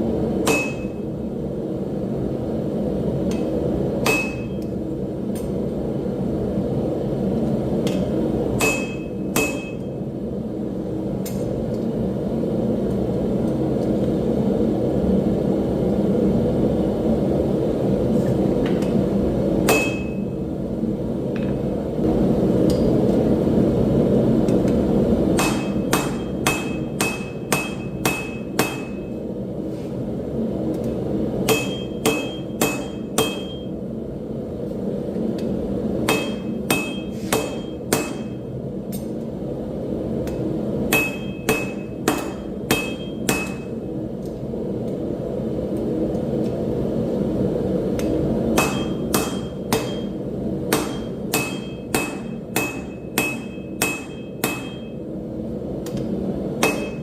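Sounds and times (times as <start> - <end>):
hammer striking steel on anvil: 0.4 - 1.0, 3.3 - 5.6, 7.8 - 10.0, 19.6 - 20.3, 25.4 - 29.2, 31.4 - 33.7, 36.0 - 39.1, 40.2 - 43.8, 48.0 - 55.0, 55.8 - 57.0.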